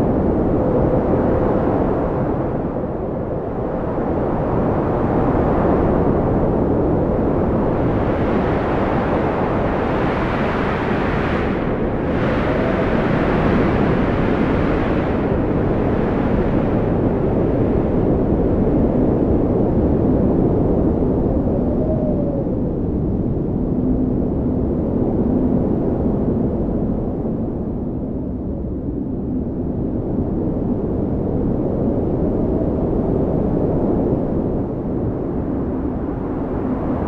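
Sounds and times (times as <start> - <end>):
strong wind blowing: 0.0 - 37.0
faint wind whistle: 7.1 - 23.6.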